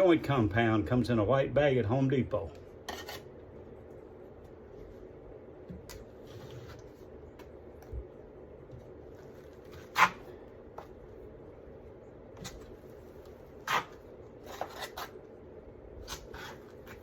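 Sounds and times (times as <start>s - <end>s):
low steady hum: 0.0s - 17.0s
drywall knife scraping: 2.8s - 3.3s, 13.6s - 15.2s, 16.0s - 17.0s.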